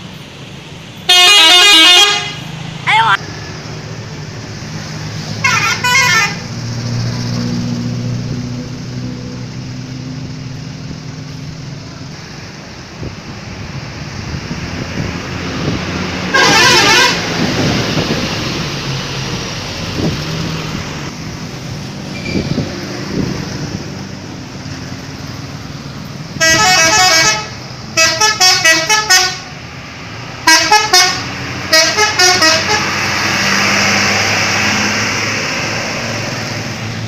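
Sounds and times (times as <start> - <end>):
street traffic noise: 0.0 - 37.0
musical bus horn tune: 1.1 - 2.5, 5.4 - 6.5, 16.3 - 17.5, 26.4 - 29.6, 30.4 - 33.0.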